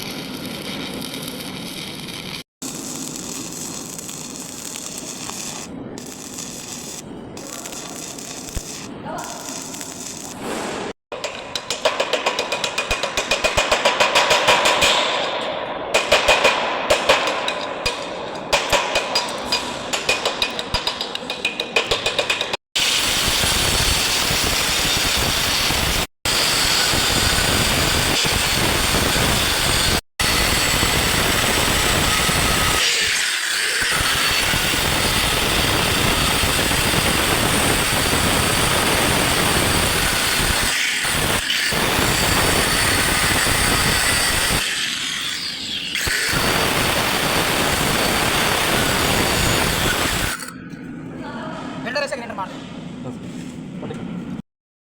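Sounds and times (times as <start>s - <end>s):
arc welding crackling sputter: 0.0s - 10.5s, 22.8s - 32.8s, 33.8s - 44.7s, 46.0s - 50.4s.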